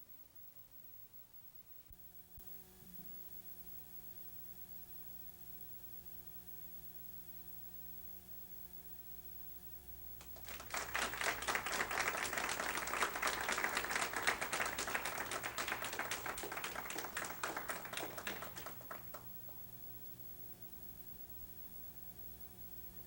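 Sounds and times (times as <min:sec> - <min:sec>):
audience applauding: 0:10.2 - 0:19.6.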